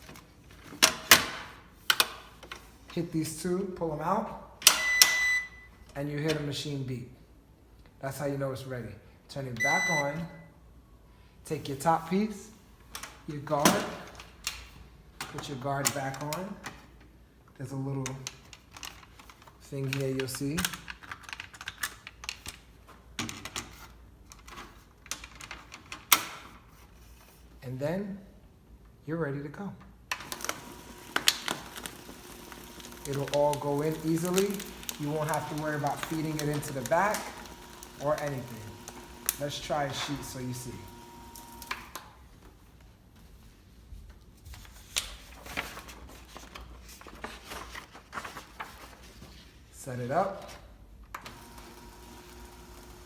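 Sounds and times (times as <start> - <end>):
paper rustling: 18.4 - 22.7, 30.3 - 41.7, 42.5 - 49.7.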